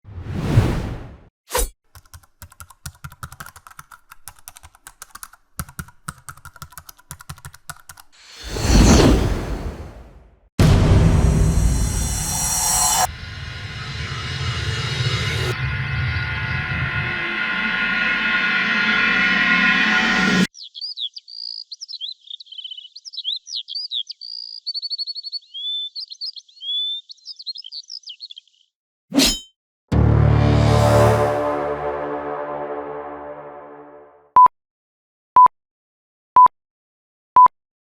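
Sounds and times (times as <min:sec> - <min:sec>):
keyboard typing: 0:01.9 - 0:08.2
whoosh: 0:08.3 - 0:20.5, 0:29.9 - 0:33.8
songbird singing: 0:20.5 - 0:28.8.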